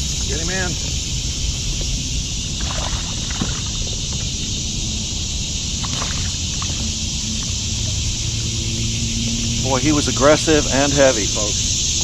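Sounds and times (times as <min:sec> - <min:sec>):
steady high hiss: 0:00.0 - 0:02.6, 0:06.4 - 0:12.0
wind rumbling on microphone: 0:00.0 - 0:12.0
water splashes and knocks: 0:01.7 - 0:04.5, 0:05.7 - 0:07.6.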